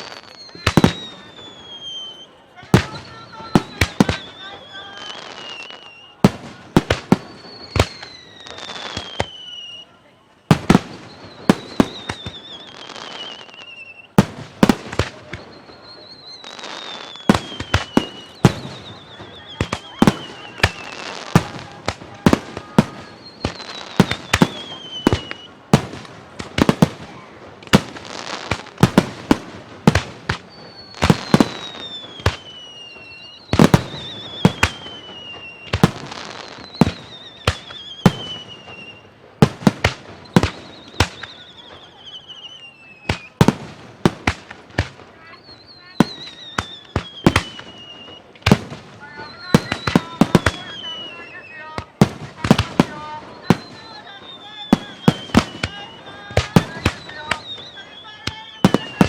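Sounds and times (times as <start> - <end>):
crackling hiss: 0.0 - 59.0
descending firework whistles: 0.0 - 59.0
fireworks bangs: 0.0 - 59.0.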